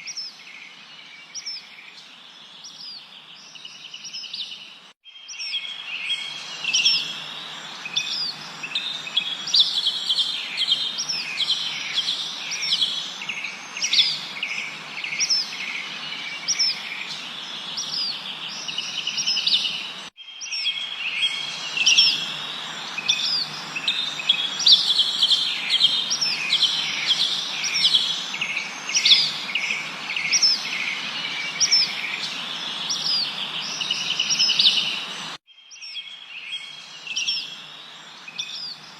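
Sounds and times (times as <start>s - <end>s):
songbirds chirping and trilling: 0.0s - 38.9s
steady background hiss: 5.7s - 20.1s, 21.0s - 35.4s.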